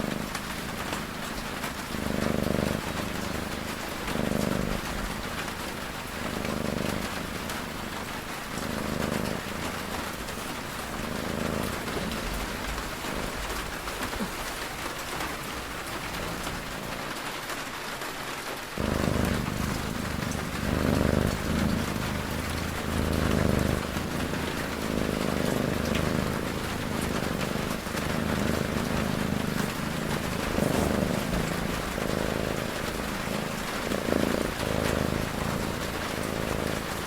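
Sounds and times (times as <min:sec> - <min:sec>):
cat snoring: 0:00.0 - 0:17.1, 0:18.8 - 0:37.0
steady rain falling: 0:00.0 - 0:37.0.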